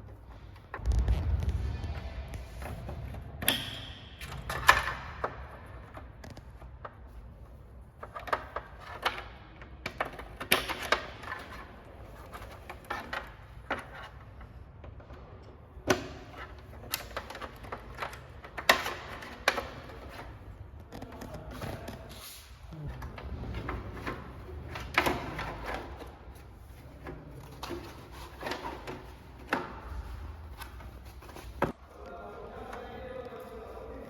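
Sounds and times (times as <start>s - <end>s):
steady low hum: 0.0s - 5.9s
hardware clicking and knocking: 7.9s - 22.0s, 23.5s - 31.8s.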